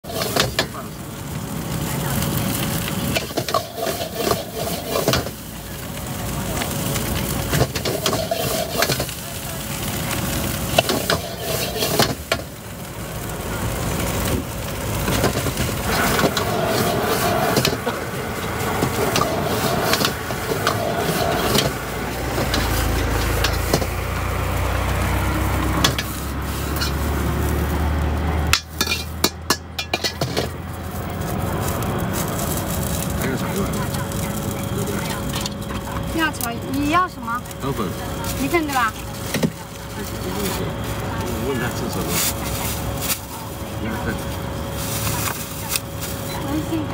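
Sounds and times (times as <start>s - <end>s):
food sizzling: 0.0s - 46.9s
spatula clattering on a wok: 25.8s - 26.2s, 28.5s - 30.5s.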